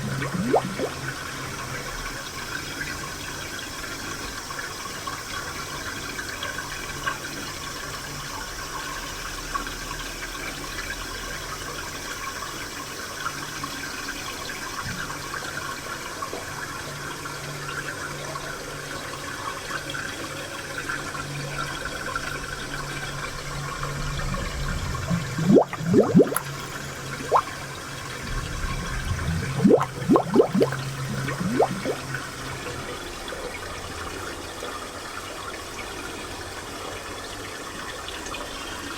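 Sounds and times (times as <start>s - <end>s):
water gurgling and bubbling: 0.0s - 2.1s, 23.3s - 32.7s
spring water trickling: 0.0s - 3.5s, 23.0s - 33.7s.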